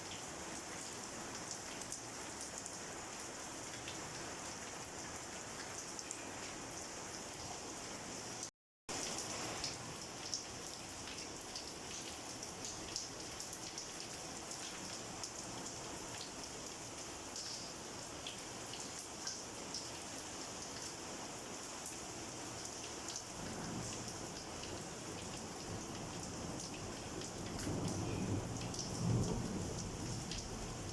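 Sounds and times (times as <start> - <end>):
raindrops splatting on a surface: 0.0 - 7.7, 8.3 - 30.9
heavy rain falling: 23.3 - 30.9.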